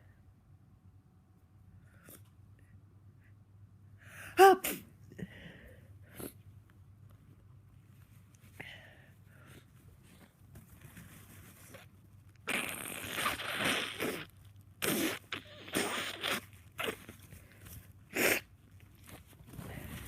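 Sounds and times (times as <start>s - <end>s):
person blowing nose: 12.4s - 17.2s, 18.1s - 18.5s.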